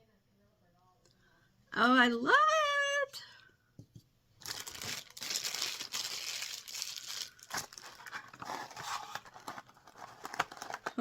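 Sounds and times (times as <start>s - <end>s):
plastic and paper crinkling: 4.4s - 11.0s.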